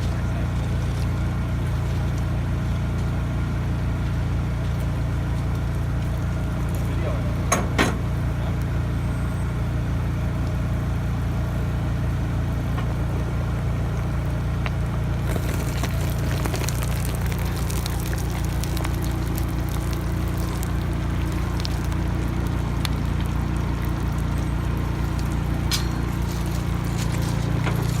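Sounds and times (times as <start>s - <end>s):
hissing crackle of burning: 0.0s - 28.0s
low engine hum: 0.0s - 28.0s.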